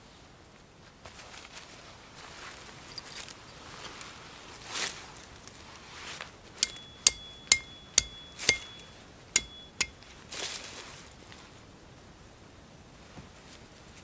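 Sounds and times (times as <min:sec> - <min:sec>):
hammer striking metal: 0:06.6 - 0:10.0.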